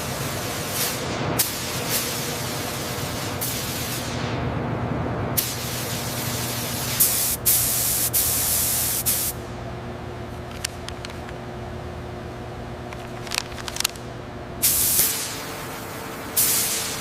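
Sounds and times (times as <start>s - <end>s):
spray gun hissing: 5.4s - 9.4s, 14.6s - 15.7s, 16.4s - 17.0s
low steady hum: 7.6s - 16.4s.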